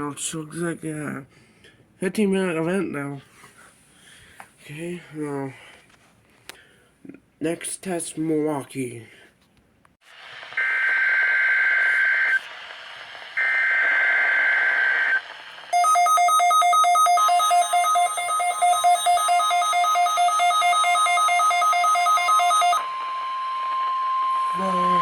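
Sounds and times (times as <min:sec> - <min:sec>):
radio static: 0:10.1 - 0:15.8, 0:17.6 - 0:25.0
steady warning alarm tone: 0:13.4 - 0:25.0
fast electronic alert beeping: 0:15.8 - 0:22.8.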